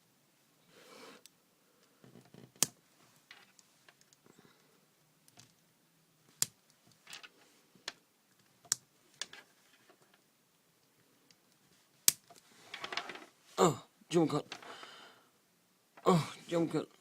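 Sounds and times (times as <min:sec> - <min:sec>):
light rattling and scraping: 0:06.8 - 0:07.9, 0:09.2 - 0:10.2, 0:12.5 - 0:13.5.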